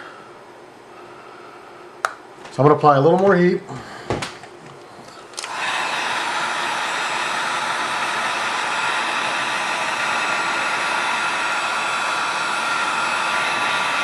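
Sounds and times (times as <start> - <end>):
hair dryer blowing: 5.3 - 14.0.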